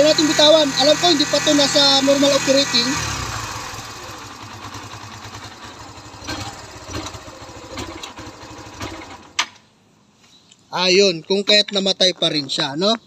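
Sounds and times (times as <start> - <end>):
engine idling unevenly: 0.0 - 9.4.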